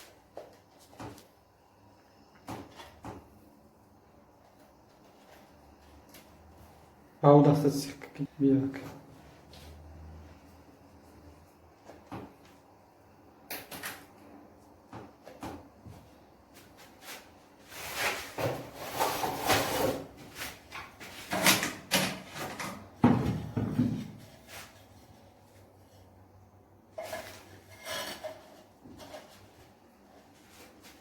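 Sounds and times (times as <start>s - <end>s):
hard objects knocking and clattering: 21.3s - 24.3s.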